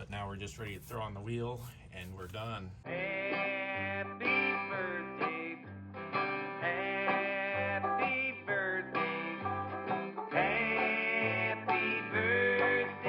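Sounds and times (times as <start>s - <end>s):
country guitar music: 0.0s - 13.0s.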